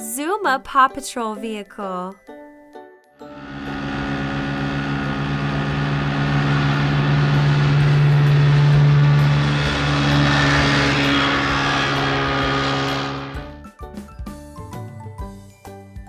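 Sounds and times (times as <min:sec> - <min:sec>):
low engine drone: 0:03.2 - 0:13.5.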